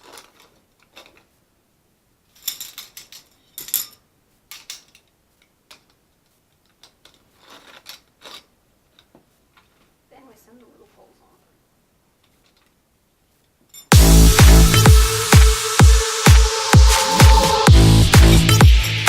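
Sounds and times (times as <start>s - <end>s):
objects rustling and clacking: 0.0s - 1.4s, 2.2s - 10.0s, 12.2s - 12.8s.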